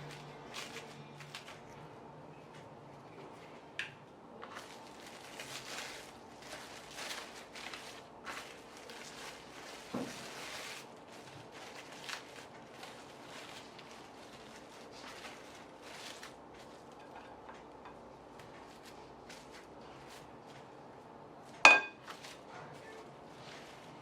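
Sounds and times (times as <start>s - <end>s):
plastic wrapper crinkling: 0.0s - 1.8s, 4.4s - 17.1s.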